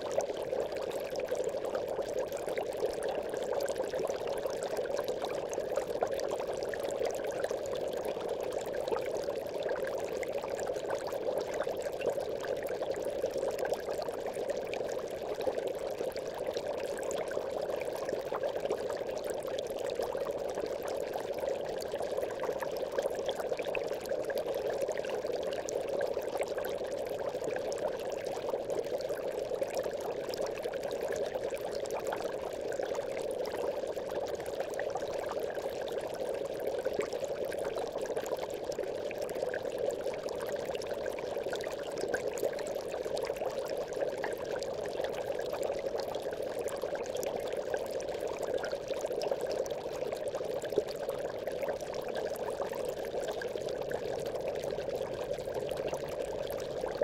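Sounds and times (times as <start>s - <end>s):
aquarium air bubbling: 0.0s - 57.0s.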